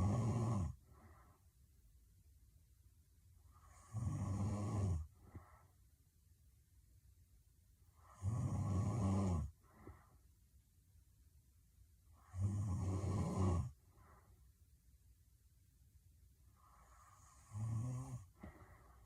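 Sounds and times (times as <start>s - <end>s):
woman snoring heavily: 0.0s - 0.8s, 3.6s - 5.1s, 8.0s - 9.5s, 12.2s - 13.8s, 16.9s - 18.6s
faint breath: 0.8s - 1.6s, 5.1s - 6.0s, 9.5s - 10.4s, 13.8s - 14.6s, 16.4s - 17.5s, 18.2s - 19.0s.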